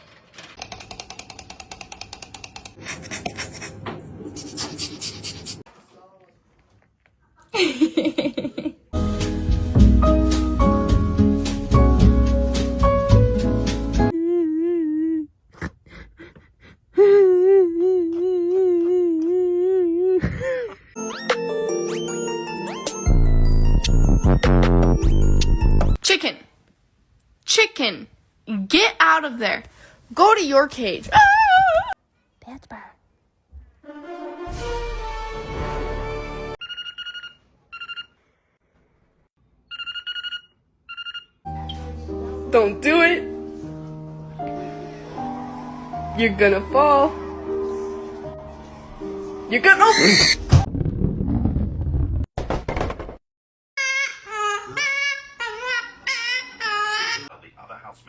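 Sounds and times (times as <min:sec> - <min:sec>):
telephone ringing: 0:36.6 - 0:38.2, 0:39.7 - 0:41.4.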